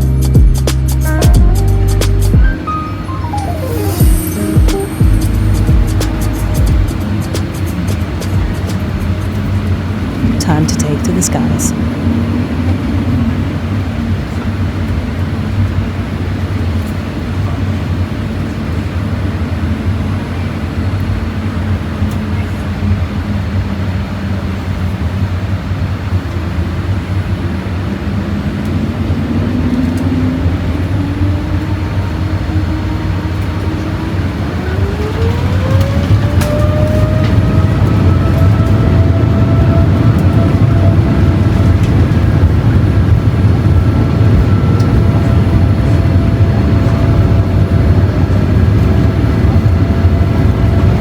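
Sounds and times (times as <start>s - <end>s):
jet engine whine rising: 2.5s - 10.0s, 27.2s - 50.9s
airplane cabin rumble: 26.8s - 51.0s.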